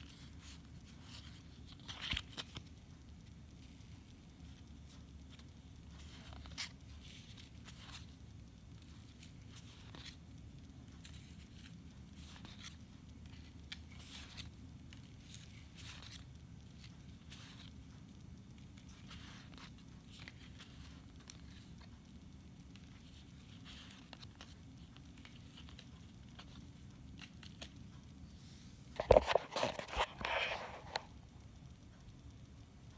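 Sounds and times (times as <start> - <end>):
card packaging crinkling: 29.0 - 31.0.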